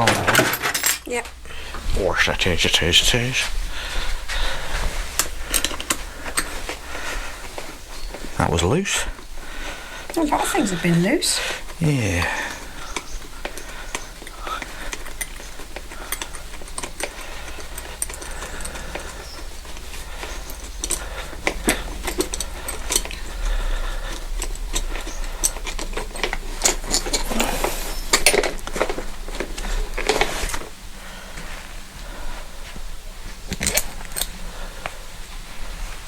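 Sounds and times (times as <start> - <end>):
hand tools clinking on metal: 0.0 - 1.3, 4.9 - 9.2, 10.0 - 30.7, 33.5 - 34.4.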